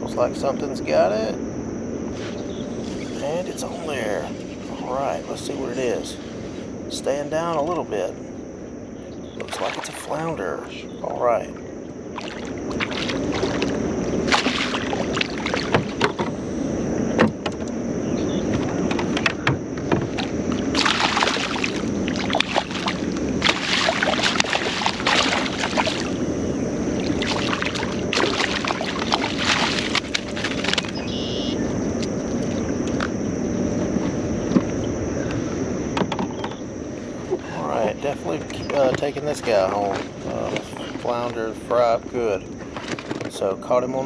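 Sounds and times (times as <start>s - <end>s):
water splashing against a kayak: 9.4s - 10.4s, 12.1s - 16.4s, 18.5s - 26.3s, 27.0s - 31.2s, 37.7s - 43.8s.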